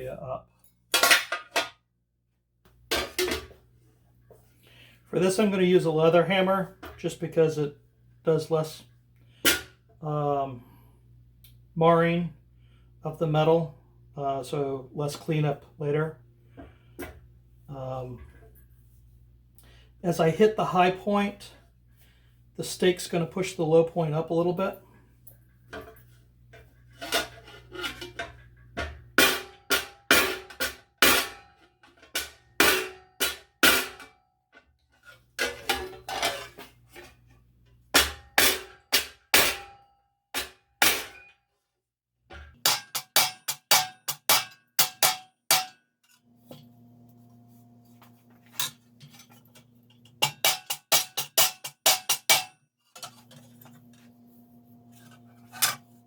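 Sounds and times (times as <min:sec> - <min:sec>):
hammer striking steel plate: 0:29.2 - 0:31.5, 0:32.2 - 0:34.2, 0:38.0 - 0:39.8, 0:42.5 - 0:45.8, 0:50.2 - 0:52.6.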